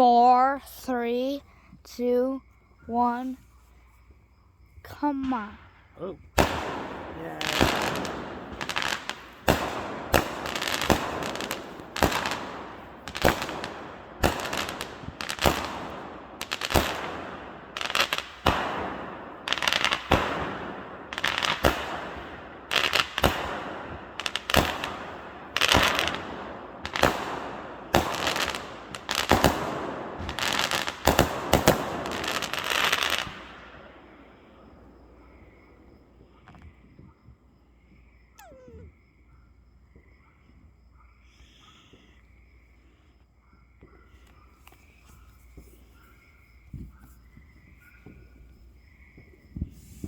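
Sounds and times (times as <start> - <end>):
fireworks bangs: 5.0 - 36.9
fireworks crackling: 6.4 - 35.5.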